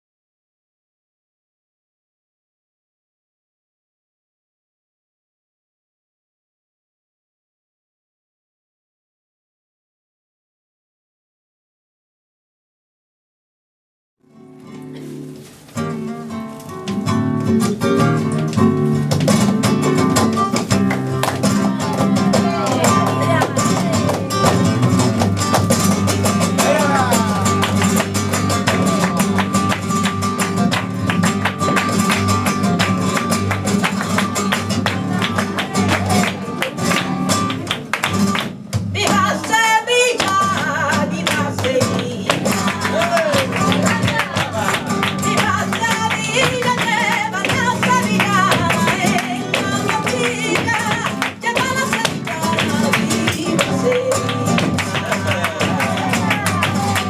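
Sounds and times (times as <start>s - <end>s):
flamenco guitar strumming: 14.2s - 57.0s
person singing: 21.3s - 25.0s, 26.4s - 29.4s, 39.0s - 57.0s.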